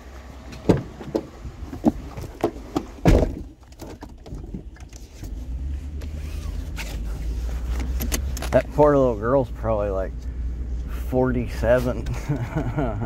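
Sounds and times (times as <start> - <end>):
low vehicle rumble: 0.0 - 13.0
heavy thunk: 3.0 - 3.5.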